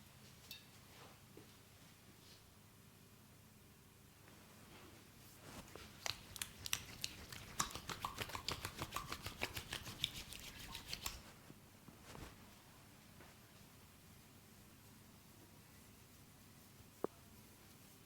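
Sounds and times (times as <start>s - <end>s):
sharp clicks and snaps: 6.0s - 11.2s.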